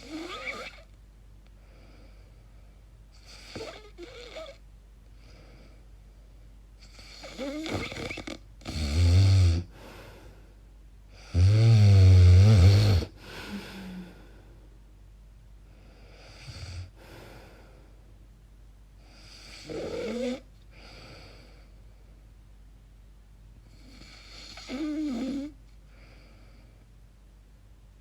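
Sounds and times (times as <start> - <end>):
woman snoring: 0.0 - 0.9, 3.2 - 4.6, 6.8 - 10.2, 11.2 - 14.2, 19.2 - 20.5, 23.8 - 25.6.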